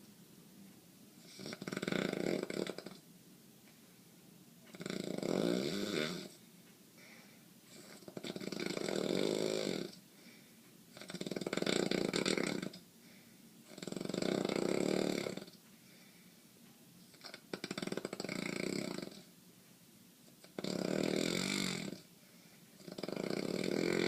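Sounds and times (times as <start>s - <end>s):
quiet breathing: 0.0s - 24.0s
man snoring: 1.2s - 3.0s, 4.7s - 6.4s, 7.7s - 10.0s, 10.9s - 12.8s, 13.7s - 15.6s, 17.1s - 19.3s, 20.4s - 22.1s, 22.8s - 24.0s.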